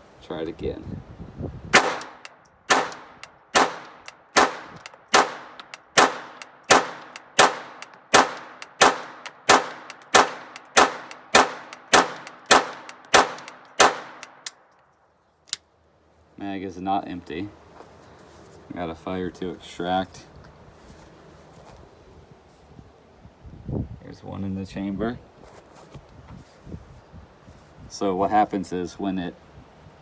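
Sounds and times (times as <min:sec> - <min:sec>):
pistol shots with ringing tail: 0:01.8 - 0:14.4.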